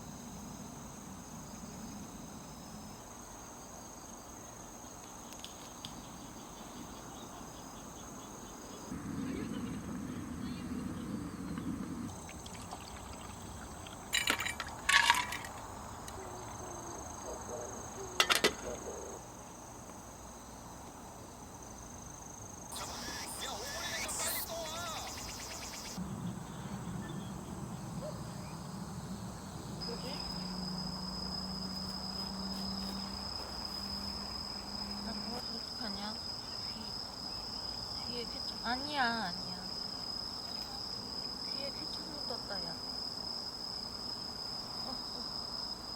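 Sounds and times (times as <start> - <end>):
high insect trill: 0.0 - 11.4, 12.1 - 45.9
tableware clinking: 14.1 - 15.5.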